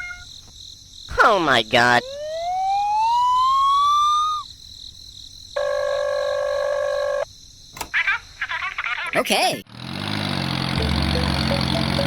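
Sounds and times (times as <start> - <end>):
rising cartoon whistle: 2.0 - 4.4.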